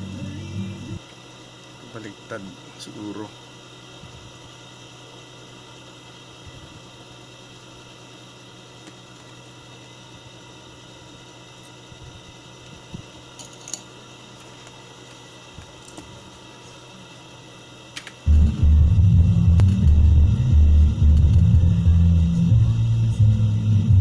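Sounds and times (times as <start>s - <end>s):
electrical hum and hiss: 0.0s - 24.0s
small parts clicking: 13.4s - 16.4s, 17.9s - 18.3s.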